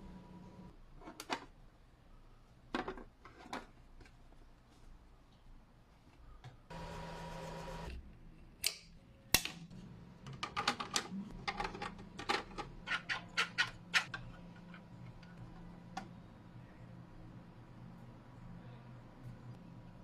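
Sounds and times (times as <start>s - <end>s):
machine hum: 0.0s - 0.7s, 6.7s - 8.0s.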